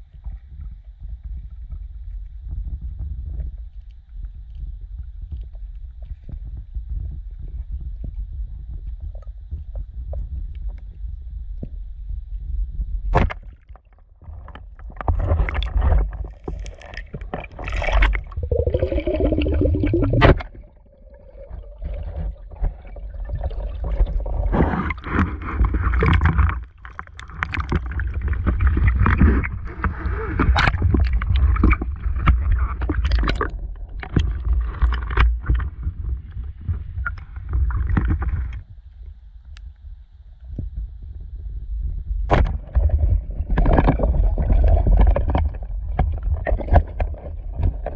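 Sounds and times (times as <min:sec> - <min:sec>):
water gurgling and sloshing: 0:00.0 - 0:39.6, 0:40.5 - 0:47.9
heavy low rumble: 0:14.4 - 0:47.9.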